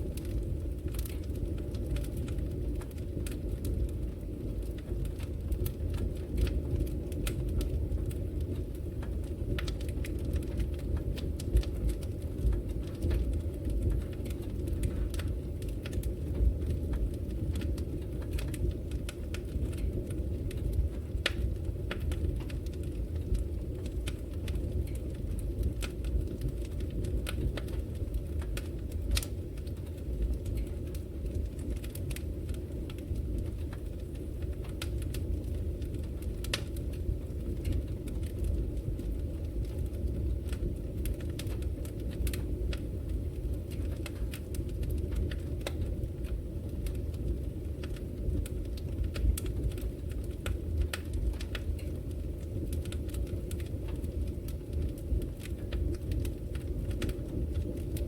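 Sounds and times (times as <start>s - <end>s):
fire flames rumbling: 0.0s - 58.0s
wood crackling and popping: 0.0s - 58.0s.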